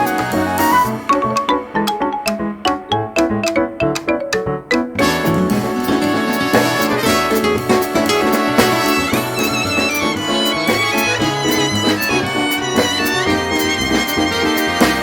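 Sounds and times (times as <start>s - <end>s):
song backing track with melody: 0.0s - 15.0s
drum and cymbal hits: 5.0s - 15.0s.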